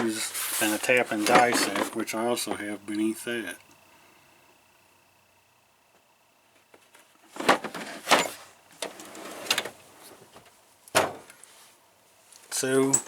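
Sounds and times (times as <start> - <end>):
metal drawer sliding and shutting: 7.3 - 10.2, 11.0 - 11.3.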